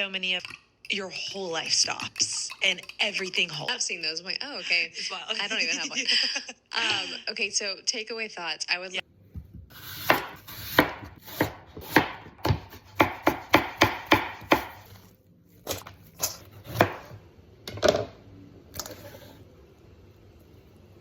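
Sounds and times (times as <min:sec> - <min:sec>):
knife chopping on cutting board: 0:09.7 - 0:14.9, 0:15.7 - 0:17.2.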